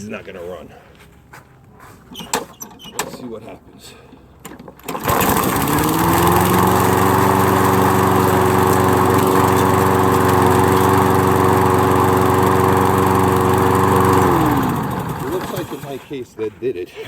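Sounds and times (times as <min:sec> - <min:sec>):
lawn mower engine running: 0:04.6 - 0:16.2.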